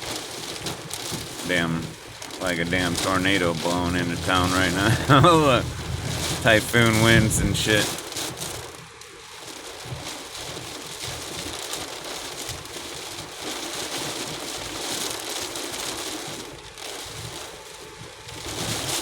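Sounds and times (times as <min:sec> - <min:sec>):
heavy rain on a car: 0:00.0 - 0:19.0
road and engine noise: 0:01.4 - 0:09.0.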